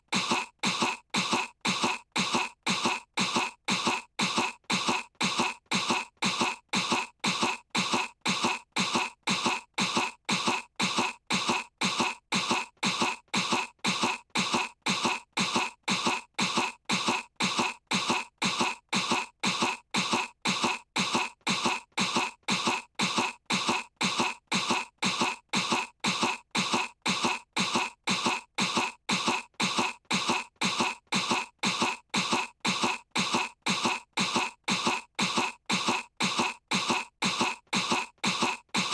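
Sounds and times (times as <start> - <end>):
cartoon girl fake coughing: 0.0 - 38.9.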